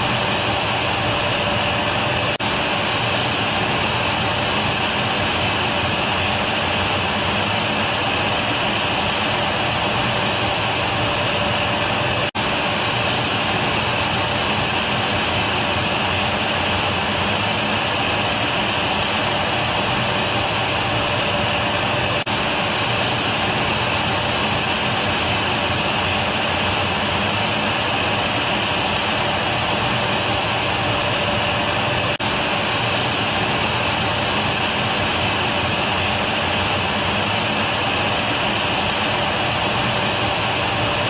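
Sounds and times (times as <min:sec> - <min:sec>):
vacuum cleaner running: 0:00.0 - 0:41.0.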